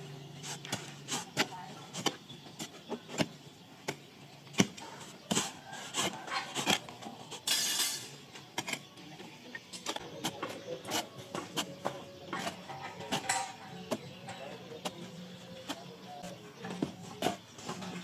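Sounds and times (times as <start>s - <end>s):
sharp knocks and clinks: 7.4s - 8.2s.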